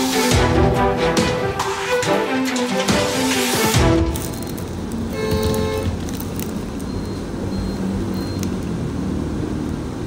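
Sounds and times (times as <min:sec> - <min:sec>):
background music with drums: 0:00.0 - 0:04.3.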